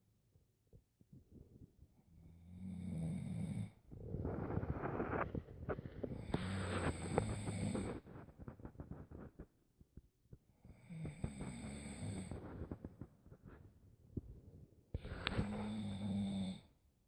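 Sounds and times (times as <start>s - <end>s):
person snoring: 6.1s - 8.0s, 10.6s - 12.8s, 15.0s - 16.7s.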